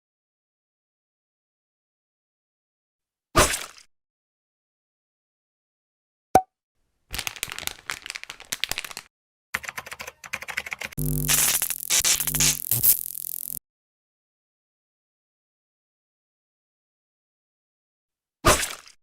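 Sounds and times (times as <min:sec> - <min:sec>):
plastic parts clicking and crackling: 0:07.1 - 0:09.1
steady buzzing hum: 0:11.0 - 0:13.6.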